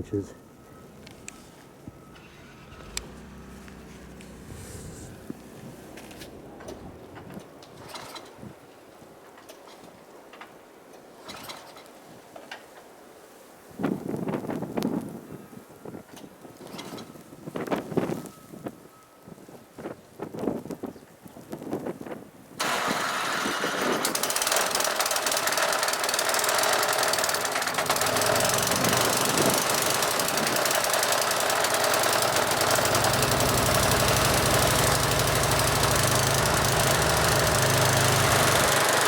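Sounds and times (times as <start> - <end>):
deep hum: 1.9 - 7.0
snowblower engine running: 2.0 - 6.9, 22.6 - 39.0.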